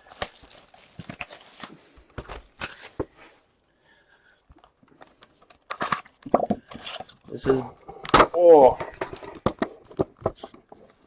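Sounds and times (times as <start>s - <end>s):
foil wrappers crinkling: 0.0s - 3.0s.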